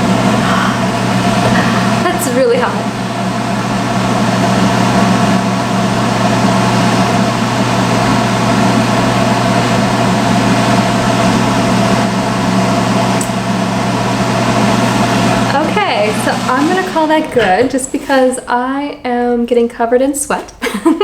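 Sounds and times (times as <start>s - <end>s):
hood hair dryer blowing: 0.0s - 18.3s.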